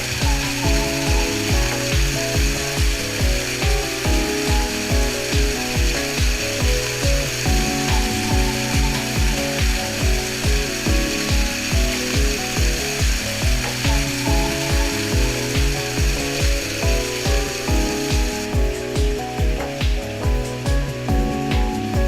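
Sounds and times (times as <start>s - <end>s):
music with thumping beat: 0.0s - 22.0s.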